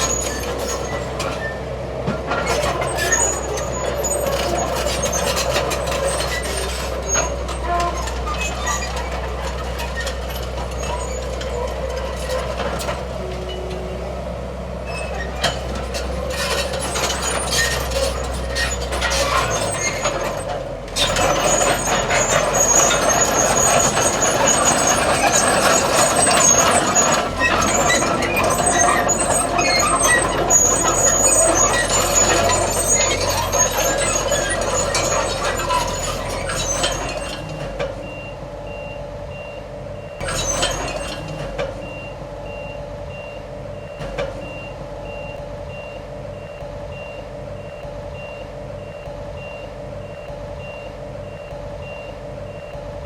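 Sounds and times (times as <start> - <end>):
heavy diesel engines under load: 0.0 - 53.0
truck reversing beeper: 0.0 - 53.0.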